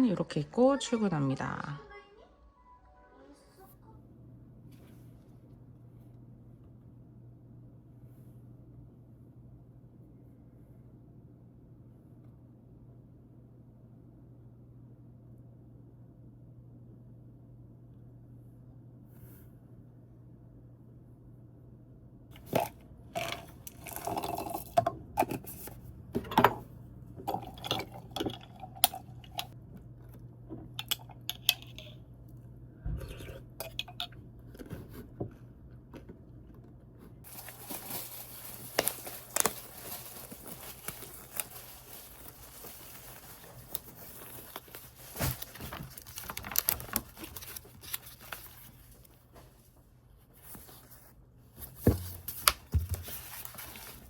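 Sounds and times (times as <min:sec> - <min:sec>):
objects clicking and clattering: 0:30.6 - 0:32.0.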